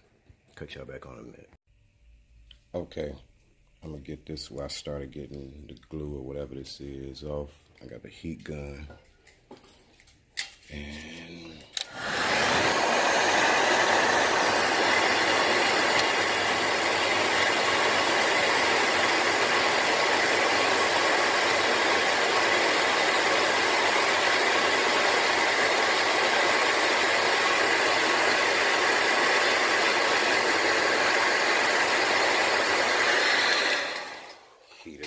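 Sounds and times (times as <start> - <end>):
heat gun fan blowing: 11.7 - 35.0.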